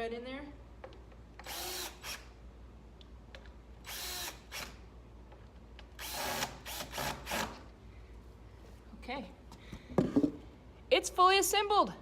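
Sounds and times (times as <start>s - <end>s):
power drill driving screws: 1.4s - 2.3s, 3.8s - 4.8s, 6.0s - 7.6s.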